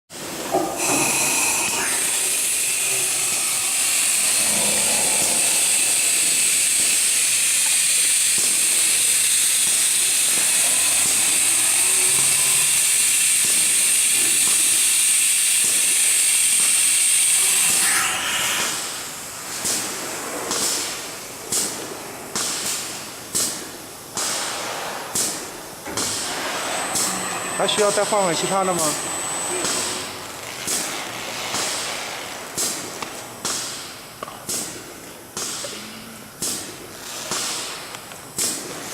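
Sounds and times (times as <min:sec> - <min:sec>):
machine spindle whine: 0:00.5 - 0:19.1, 0:25.8 - 0:31.4.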